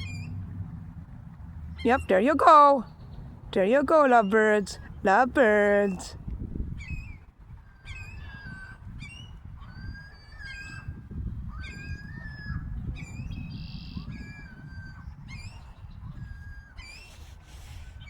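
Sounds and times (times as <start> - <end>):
seagulls calling: 0.0 - 0.6, 1.5 - 6.1, 6.8 - 18.0
steady low rumble: 0.0 - 3.7.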